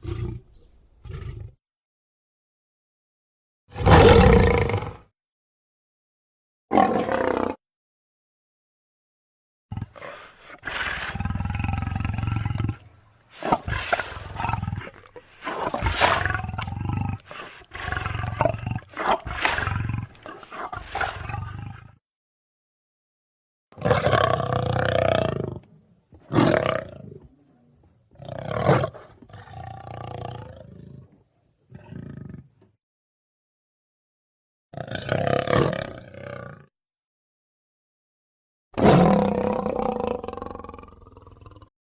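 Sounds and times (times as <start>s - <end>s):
lion-like creature roars and growls: 3.7s - 5.1s, 6.7s - 7.6s, 9.7s - 22.0s, 23.8s - 31.1s, 34.8s - 36.7s, 38.8s - 41.7s.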